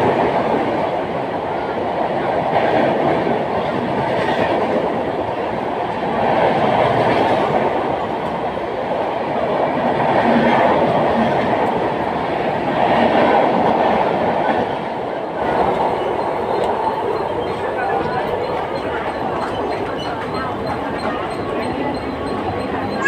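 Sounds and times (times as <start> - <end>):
train wheels on track: 0.0 - 23.0.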